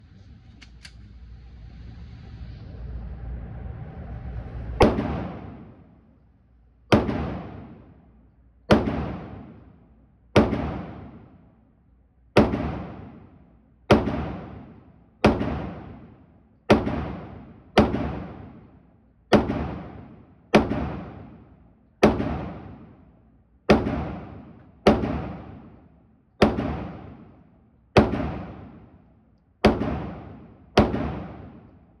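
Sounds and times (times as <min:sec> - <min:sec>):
pistol shots with echo: 0:04.8 - 0:05.9, 0:06.9 - 0:11.6, 0:12.4 - 0:32.0.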